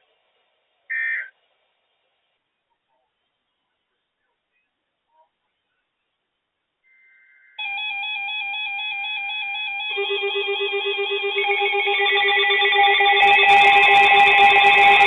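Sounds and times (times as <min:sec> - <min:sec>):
low rapidly pulsing alarm: 0:07.6 - 0:15.0
warbling two-pitch alarm: 0:07.6 - 0:15.0.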